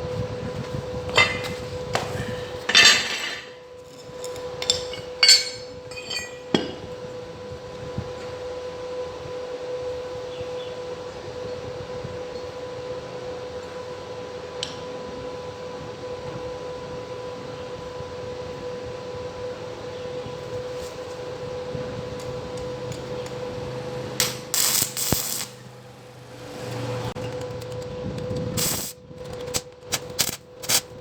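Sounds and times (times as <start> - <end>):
power tool motor whining: 19.8 - 31.0
rasping metalwork bursts: 22.4 - 27.8.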